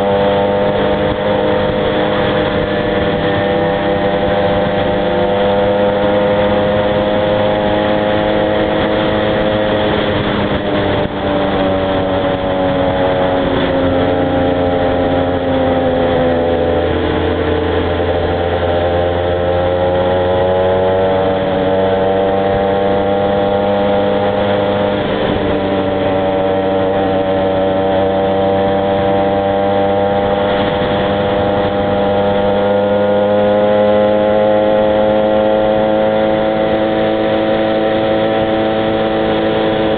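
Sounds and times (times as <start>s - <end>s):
two-stroke motorcycle engine: 0.0s - 39.9s.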